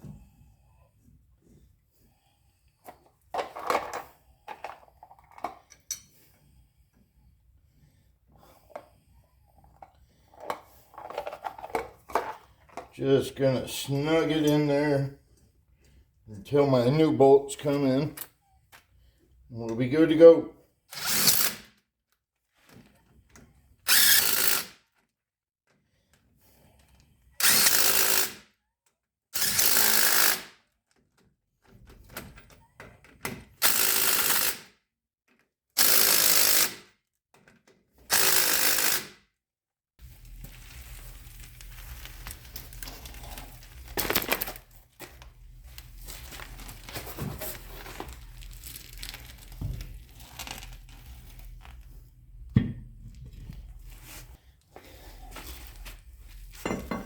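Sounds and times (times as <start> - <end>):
impact wrench bursts: 20.9 - 21.6, 23.9 - 24.8, 27.4 - 28.4, 29.4 - 30.5, 33.6 - 34.7, 35.8 - 36.9, 38.1 - 39.2.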